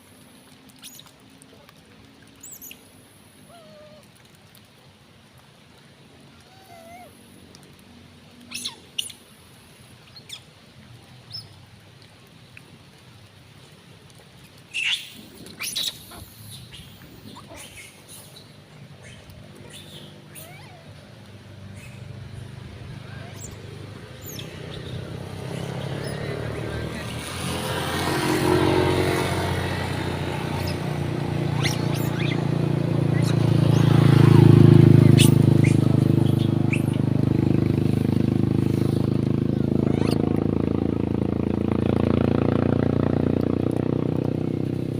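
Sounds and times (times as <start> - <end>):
monkeys squeaking: 8.5 - 9.2, 14.7 - 18.4, 19.0 - 20.9, 23.0 - 23.6, 24.2 - 27.0, 30.4 - 34.0, 34.9 - 37.0, 39.8 - 40.2
vehicle engine running: 21.2 - 44.9.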